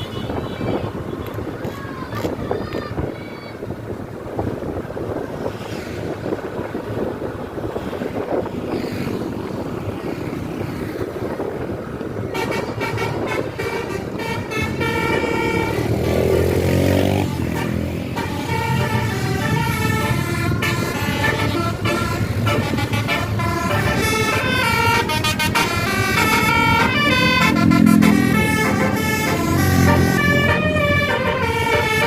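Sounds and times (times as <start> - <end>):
multi-tone musical bus horn: 0.0 - 1.4, 12.1 - 32.0
road and vehicle noise: 0.0 - 32.0.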